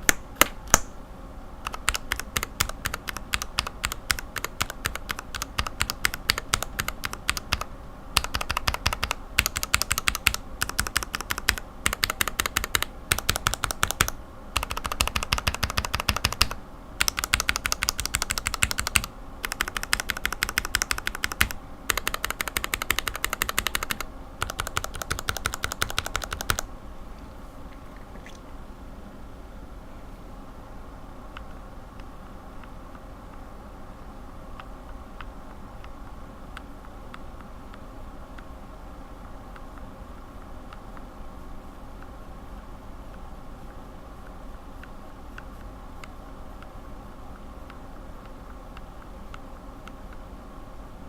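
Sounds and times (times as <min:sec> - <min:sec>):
mechanical keyboard switches clacking: 0:01.7 - 0:26.6.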